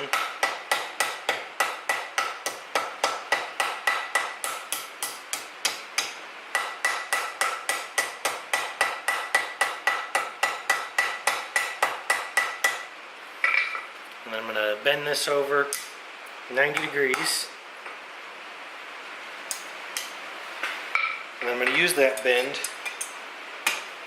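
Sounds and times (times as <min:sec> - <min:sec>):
hammer striking steel on anvil: 0:00.0 - 0:12.8.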